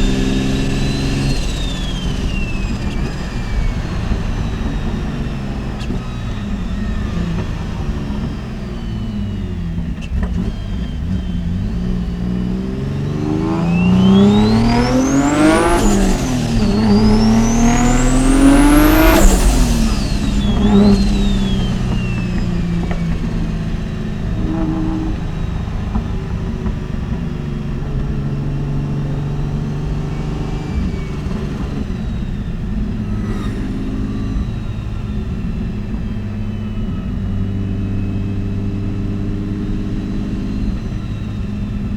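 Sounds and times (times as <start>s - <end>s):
car engine revving: 0.0s - 41.9s
high turbo whine: 0.0s - 41.9s.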